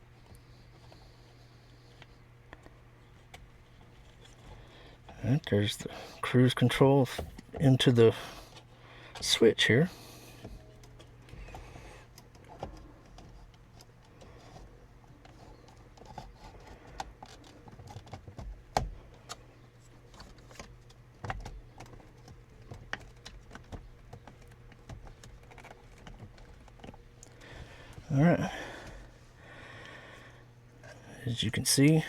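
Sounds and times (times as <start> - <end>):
faint steady hum: 0.0 - 32.0
plastic parts clicking and tapping: 10.4 - 28.1.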